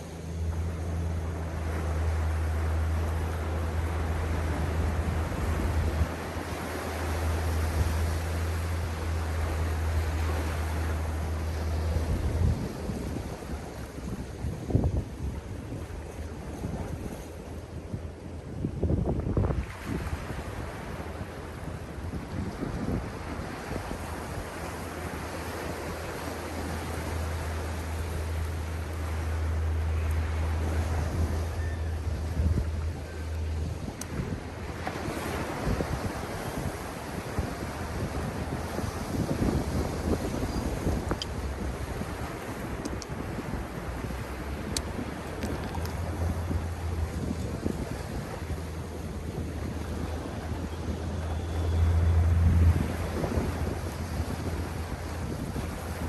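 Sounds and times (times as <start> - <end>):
low rumble: 0.0 - 16.7, 20.7 - 56.0
waves washing onto beach: 0.0 - 56.0.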